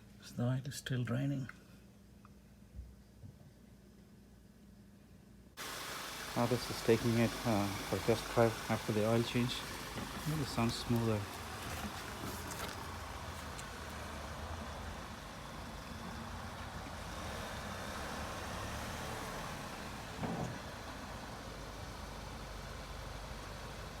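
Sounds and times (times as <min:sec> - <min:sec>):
car engine and road noise: 0:05.6 - 0:24.0.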